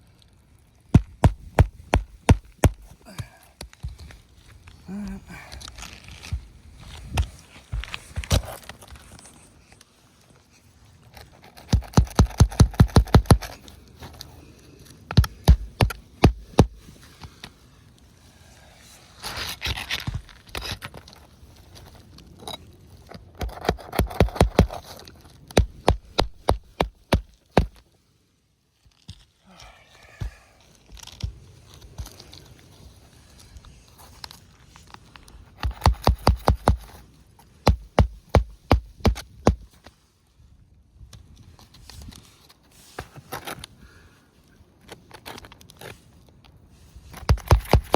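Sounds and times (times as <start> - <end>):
hammer knocking on roof shingles: 1.0 - 2.8, 11.7 - 13.5, 15.2 - 16.8, 23.5 - 24.8, 25.6 - 27.8, 35.6 - 36.9, 37.6 - 39.6, 47.3 - 47.9
sharp hammer strikes: 15.2 - 16.7.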